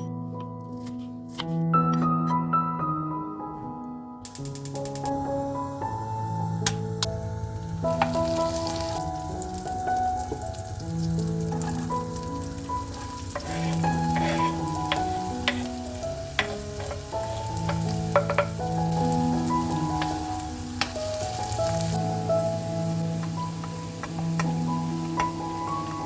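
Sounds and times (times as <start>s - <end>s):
gentle background music: 0.0s - 26.0s
food sizzling in a pan: 4.4s - 26.0s
utensil clinking against pan: 12.9s - 18.7s.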